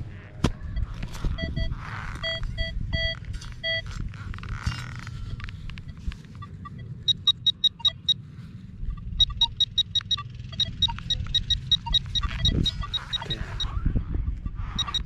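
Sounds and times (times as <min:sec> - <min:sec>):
lower detector tones: 0:00.0 - 0:15.0
short high-pitched beeps: 0:00.7 - 0:03.9, 0:05.2 - 0:08.2, 0:08.8 - 0:13.8, 0:14.4 - 0:15.0.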